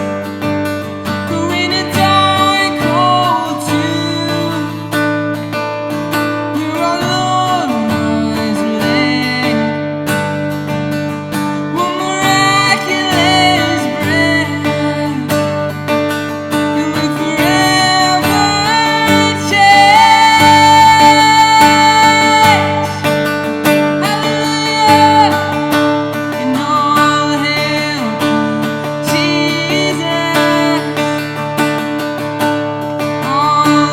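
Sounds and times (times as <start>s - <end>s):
strummed acoustic guitar: 0.0s - 33.9s
person singing worship song: 1.3s - 5.0s, 6.6s - 9.9s, 11.6s - 15.8s, 16.6s - 23.2s, 24.0s - 31.3s.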